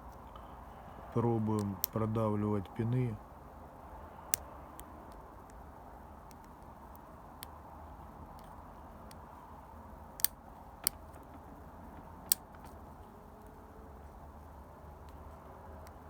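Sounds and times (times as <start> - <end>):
faint background noise: 0.0 - 16.0
lock pick clicking on pins: 10.2 - 12.8.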